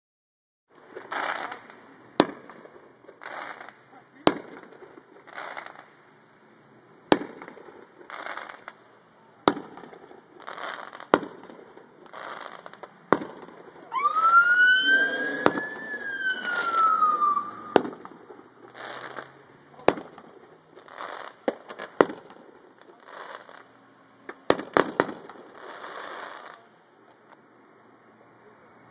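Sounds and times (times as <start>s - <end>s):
fireworks bangs: 0.8s - 6.0s, 7.0s - 26.7s
firework whistling: 9.8s - 19.3s.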